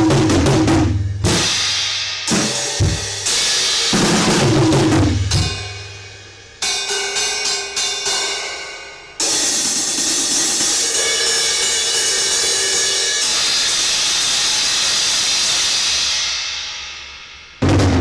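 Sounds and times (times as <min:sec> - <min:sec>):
bass drum and snare hits: 0:00.0 - 0:03.2, 0:03.9 - 0:05.6, 0:17.6 - 0:18.0
cymbal crashes: 0:00.0 - 0:18.0.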